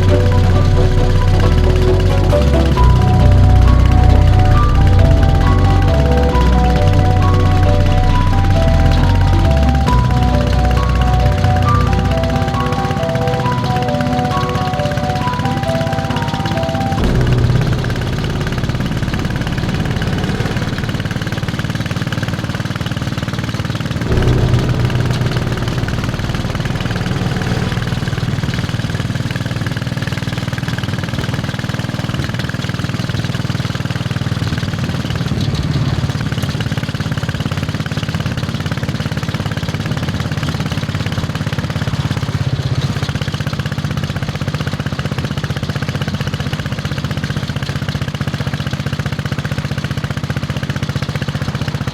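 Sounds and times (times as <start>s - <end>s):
motorcycle engine thumping: 0.0s - 51.9s.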